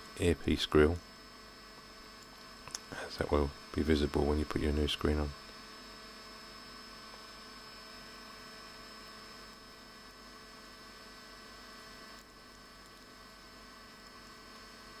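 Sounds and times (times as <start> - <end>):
faint electrical hum: 0.0 - 15.0.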